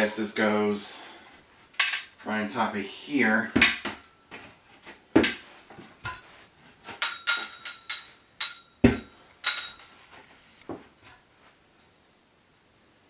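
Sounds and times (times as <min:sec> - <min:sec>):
metal parts clinking and knocking: 0:07.0 - 0:09.9.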